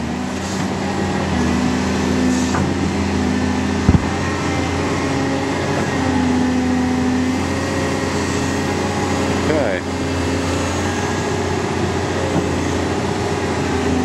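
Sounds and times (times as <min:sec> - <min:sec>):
excavator diesel engine running: 0:00.0 - 0:14.0.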